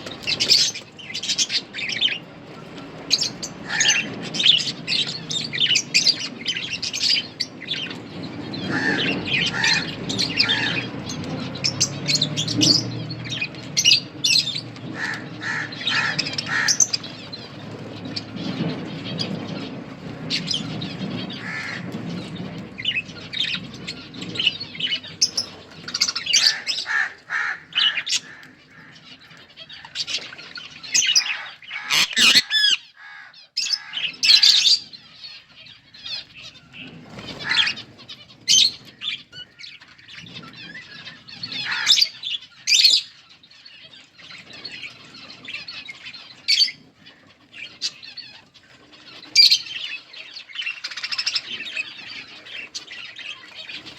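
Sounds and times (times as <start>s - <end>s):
budgerigars chirping: 0.0s - 2.3s, 3.1s - 53.9s
budgerigar squawks: 3.6s - 4.1s, 8.7s - 10.9s, 15.0s - 17.0s, 21.4s - 21.8s, 26.3s - 28.9s, 31.1s - 34.6s.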